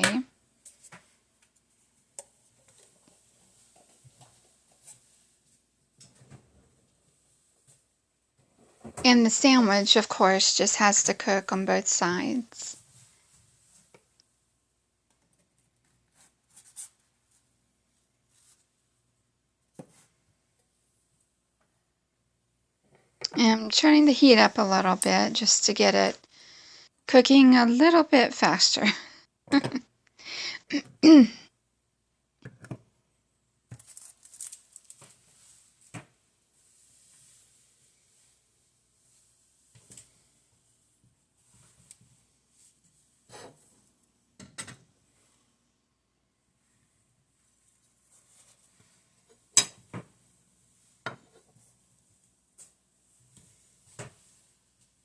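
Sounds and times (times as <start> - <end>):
faint scratchy rustles: 15.9 - 18.8, 33.8 - 44.0, 46.6 - 49.3.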